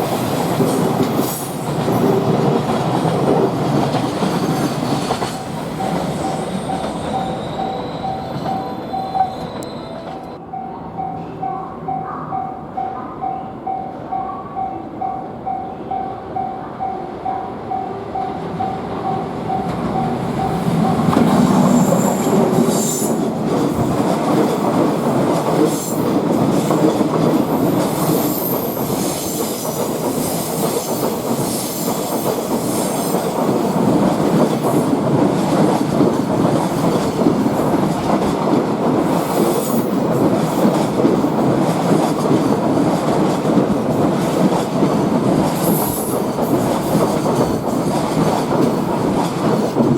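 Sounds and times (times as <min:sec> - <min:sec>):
train wheel squeals: 0:04.2 - 0:10.4, 0:27.5 - 0:33.3.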